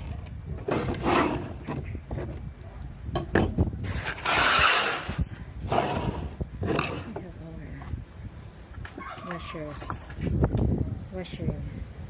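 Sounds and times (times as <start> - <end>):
long scraping rasp: 3.9 - 7.1.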